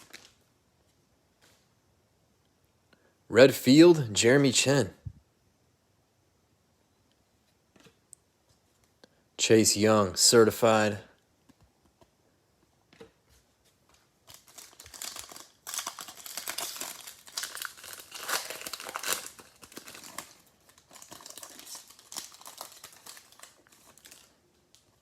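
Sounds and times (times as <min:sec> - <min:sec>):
wrapper crinkling and tearing: 0:00.0 - 0:00.4, 0:14.2 - 0:25.0.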